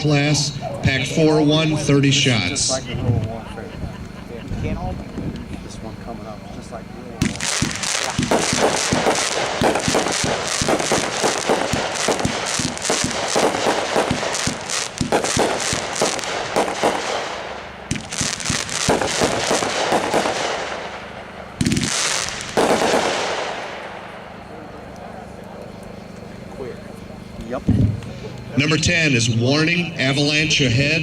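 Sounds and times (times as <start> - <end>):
firework cake shots and bangs: 7.2 - 24.0.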